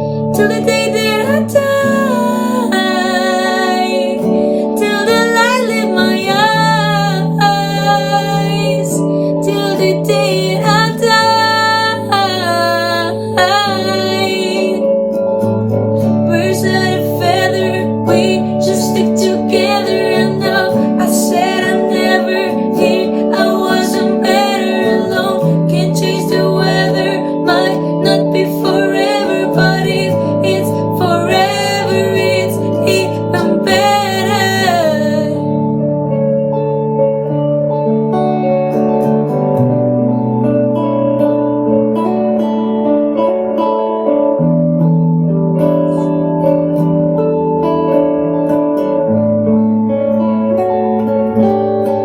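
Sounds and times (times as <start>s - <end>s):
strummed acoustic guitar: 0.0s - 52.0s
woman singing pop ballad: 0.3s - 15.0s, 16.0s - 35.7s.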